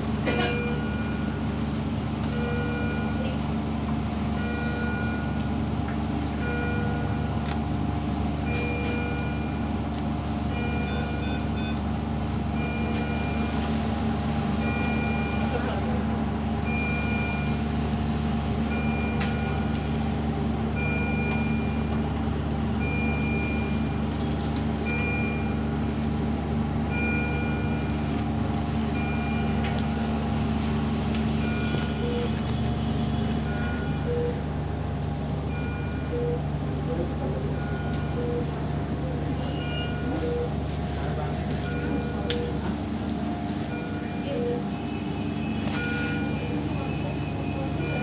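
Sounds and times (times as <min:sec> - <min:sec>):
machines humming: 0:00.0 - 0:48.0
medical alarm two-tone beeps: 0:02.2 - 0:03.4, 0:04.3 - 0:05.5, 0:06.3 - 0:07.4, 0:08.4 - 0:09.7, 0:10.5 - 0:11.9, 0:12.5 - 0:13.7, 0:14.6 - 0:15.8, 0:16.6 - 0:17.7, 0:18.6 - 0:19.9, 0:20.8 - 0:22.0, 0:22.8 - 0:26.1, 0:26.9 - 0:30.2, 0:31.3 - 0:34.5, 0:35.5 - 0:36.6, 0:37.5 - 0:40.7, 0:41.6 - 0:42.7, 0:43.6 - 0:48.0.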